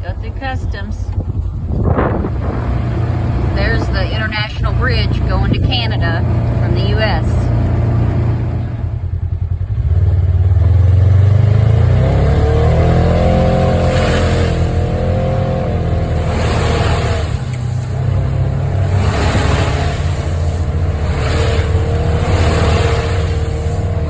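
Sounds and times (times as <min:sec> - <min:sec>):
off-road vehicle engine running: 0:00.0 - 0:24.0.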